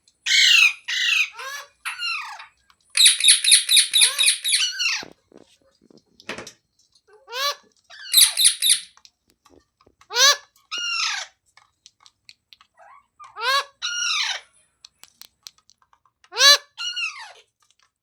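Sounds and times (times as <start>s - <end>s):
parrot squawking: 0.2s - 5.1s, 7.2s - 8.9s, 10.1s - 11.4s, 12.8s - 14.5s, 16.3s - 17.4s.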